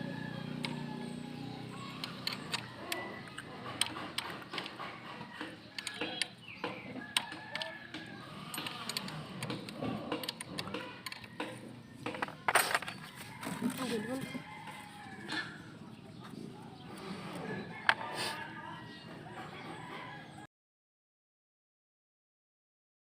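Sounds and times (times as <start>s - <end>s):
hand tools clinking on metal: 2.0s - 14.2s
metal parts clattering: 12.1s - 13.8s.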